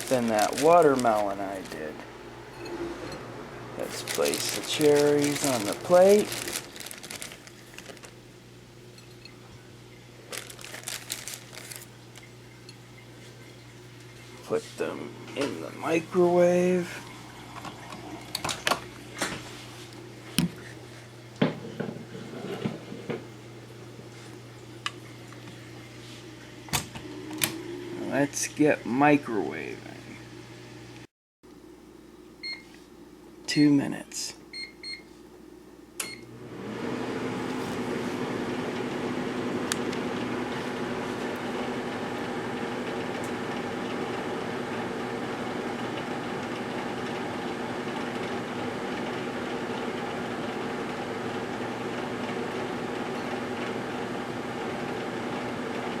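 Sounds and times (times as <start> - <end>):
low steady hum: 0.0 - 36.2.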